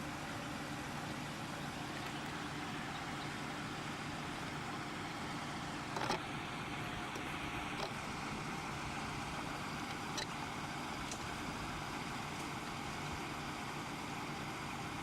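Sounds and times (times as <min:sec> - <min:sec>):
engine idling: 0:00.0 - 0:15.0.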